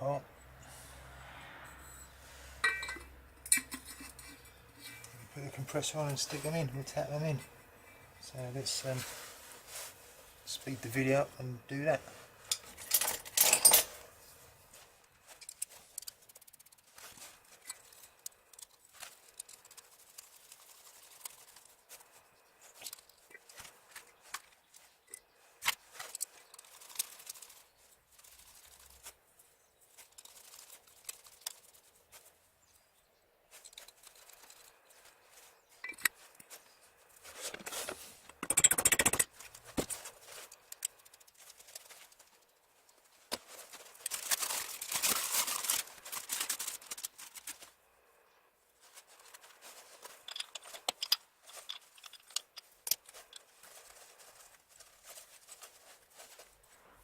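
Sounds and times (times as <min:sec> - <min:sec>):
tools and metal parts clattering: 0:01.9 - 0:07.5, 0:12.4 - 0:14.1, 0:48.9 - 0:56.5.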